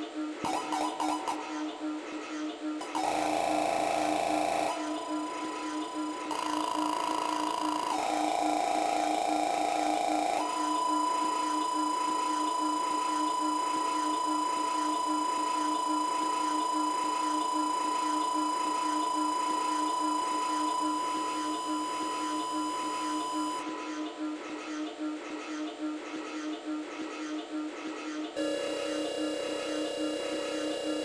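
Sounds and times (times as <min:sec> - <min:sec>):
low pulsing tone: 0:00.1 - 0:25.2
steady high electronic tone: 0:00.4 - 0:24.9.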